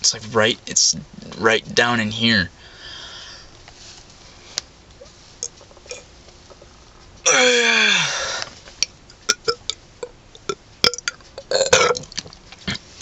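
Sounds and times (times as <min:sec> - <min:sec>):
man burping: 0:07.3 - 0:08.4, 0:10.8 - 0:12.8.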